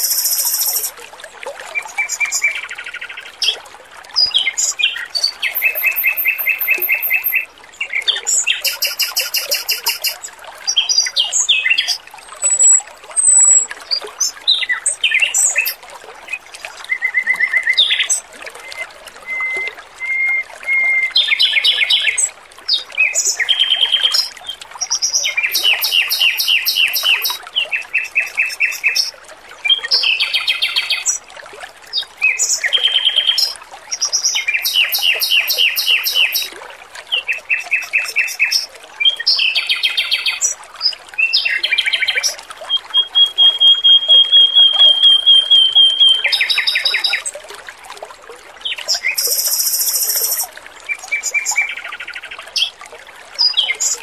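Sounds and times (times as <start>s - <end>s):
bird singing trilled phrases: 0.0s - 0.9s, 4.2s - 10.3s, 10.9s - 15.8s, 24.9s - 29.1s, 32.0s - 36.5s, 37.5s - 47.4s, 48.8s - 51.9s
trickling water: 0.0s - 54.0s.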